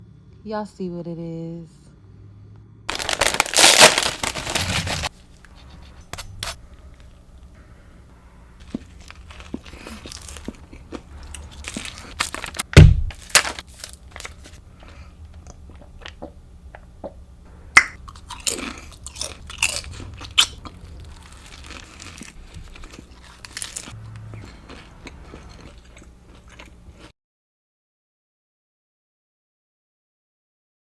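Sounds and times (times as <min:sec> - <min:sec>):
sandwich bitten and chewed: 0:02.9 - 0:27.1
sharp thump: 0:12.8 - 0:13.2.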